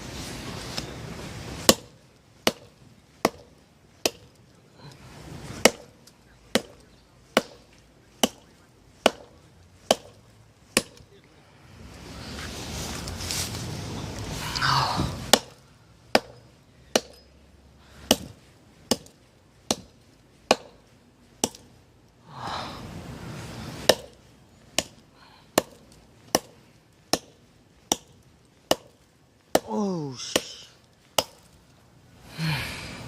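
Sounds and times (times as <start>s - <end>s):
hatchet chopping log: 1.6s - 4.4s, 5.6s - 11.1s, 15.3s - 17.3s, 18.0s - 20.8s, 21.4s - 21.7s, 23.8s - 31.6s.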